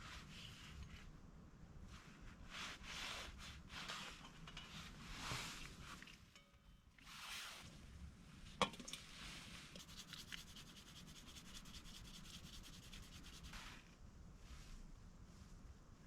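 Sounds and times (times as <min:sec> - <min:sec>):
rapid scraping: 0:09.8 - 0:13.8.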